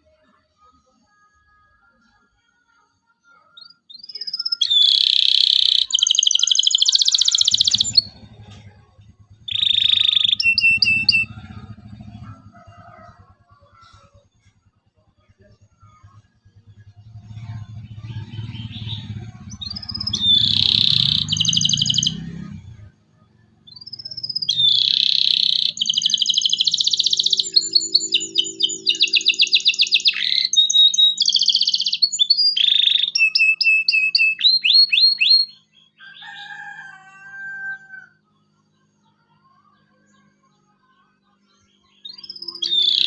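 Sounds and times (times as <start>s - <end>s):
canary singing trills: 3.4s - 14.6s, 15.4s - 38.2s, 41.7s - 43.0s
faint low bird calls: 4.0s - 35.6s
low rumble: 7.7s - 13.6s, 14.5s - 24.7s.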